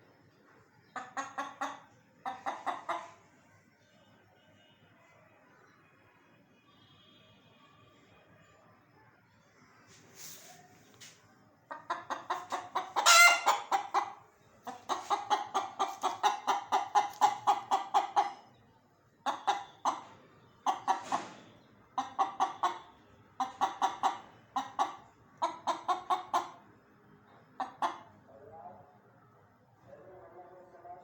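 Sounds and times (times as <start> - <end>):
chickens clucking: 0.8 - 3.3, 10.4 - 28.4
chicken squawk: 11.7 - 18.4.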